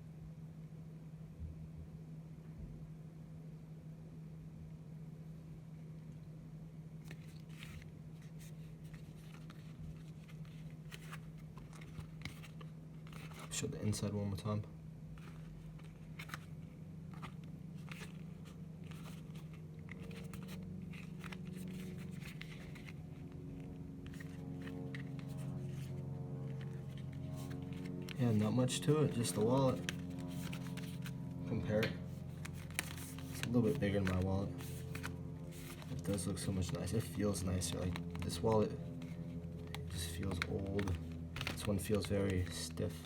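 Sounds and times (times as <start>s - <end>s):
steady low hum: 0.0s - 43.0s
packaging crinkling and rustling: 7.0s - 13.6s, 15.2s - 43.0s.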